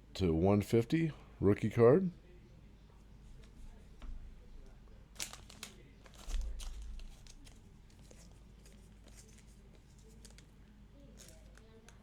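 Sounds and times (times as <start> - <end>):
cards rustling and clicking: 5.2 - 10.5, 11.1 - 12.0.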